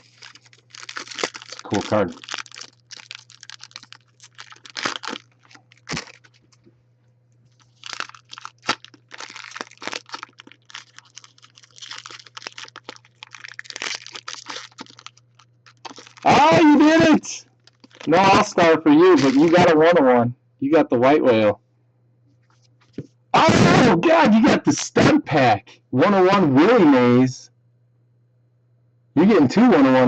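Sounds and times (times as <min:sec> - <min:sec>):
card pack wrapper crinkling: 0:00.0 - 0:06.7, 0:07.5 - 0:19.7.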